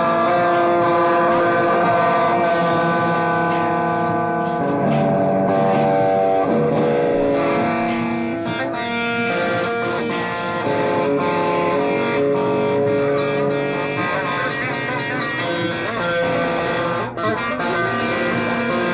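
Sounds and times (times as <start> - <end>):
slowed-down guitar music: 0.0 - 18.9.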